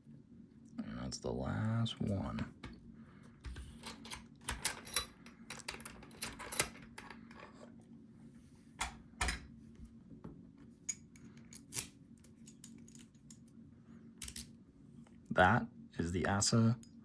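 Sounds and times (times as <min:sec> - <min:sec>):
lock cylinder clicks and rattles: 0:03.5 - 0:07.4, 0:14.2 - 0:14.5.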